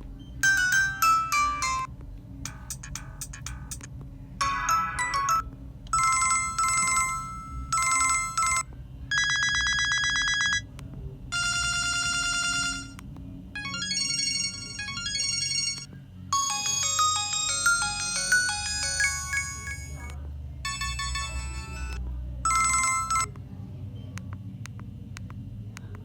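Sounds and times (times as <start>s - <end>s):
phone ringtone electronic beeps: 0.4s - 1.9s, 2.5s - 10.6s, 11.3s - 13.0s, 13.6s - 23.3s
buzzy trilled phone rings: 11.4s - 13.0s, 13.6s - 23.3s
short synthesized ringtone melody: 16.4s - 20.1s.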